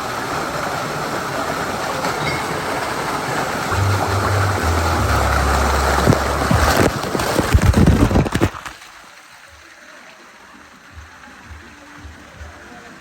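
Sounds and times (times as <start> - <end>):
rushing water: 0.0 - 13.0
low steady hum: 3.7 - 7.8
wind noise: 3.7 - 8.7
knocks and splashes: 3.8 - 8.9.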